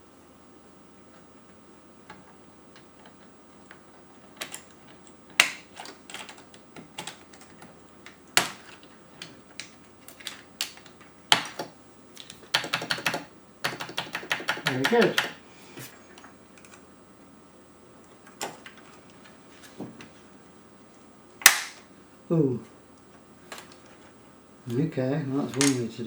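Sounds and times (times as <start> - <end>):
plastic keycaps clicking: 2.1 - 15.4.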